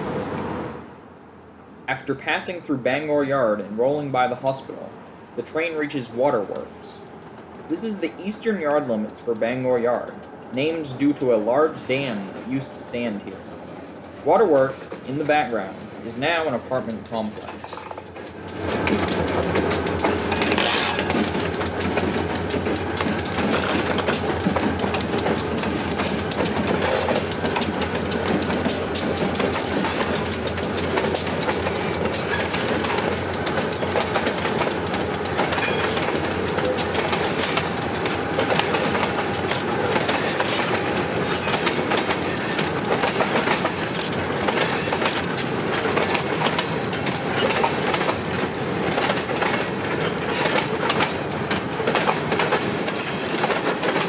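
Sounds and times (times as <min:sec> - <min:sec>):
train wheels clicking over rail joints: 0:05.2 - 0:54.0
faint wheel squeal: 0:17.5 - 0:21.9, 0:22.6 - 0:43.0, 0:44.0 - 0:48.5, 0:52.9 - 0:53.6.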